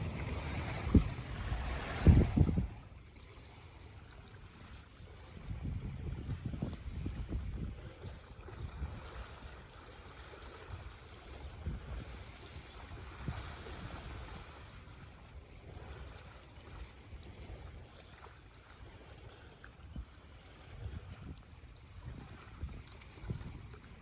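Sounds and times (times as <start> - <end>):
wind gusting on microphone: 0.0 - 3.0, 5.3 - 9.4, 11.4 - 14.7, 20.7 - 24.0
waves lapping on shore: 0.0 - 24.0.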